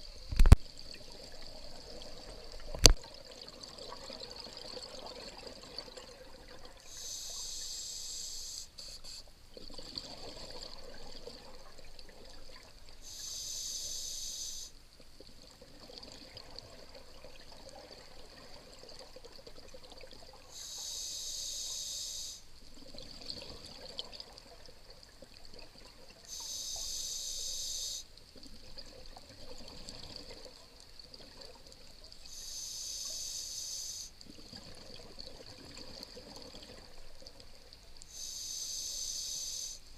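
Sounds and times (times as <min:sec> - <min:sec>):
diver inhaling through regulator: 0:06.9 - 0:09.2, 0:13.0 - 0:14.8, 0:20.5 - 0:22.5, 0:26.3 - 0:28.1, 0:32.3 - 0:34.2, 0:38.1 - 0:39.9
exhaled bubbles underwater: 0:09.6 - 0:13.0, 0:15.2 - 0:20.6, 0:28.4 - 0:32.4, 0:34.2 - 0:37.8.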